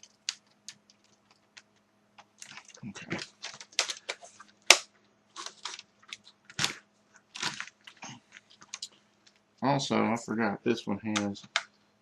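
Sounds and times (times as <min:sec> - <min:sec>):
plastic parts clicking and scraping: 0:02.3 - 0:04.8.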